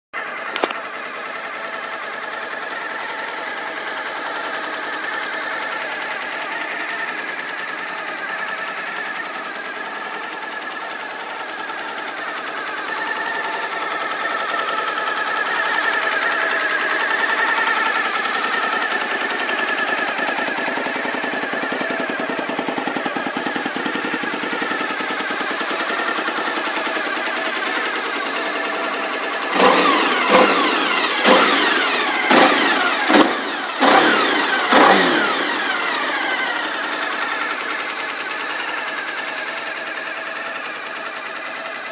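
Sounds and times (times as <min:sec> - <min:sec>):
motorcycle engine idling: 0:00.2 - 0:41.9
throttle blips revving: 0:29.5 - 0:36.6.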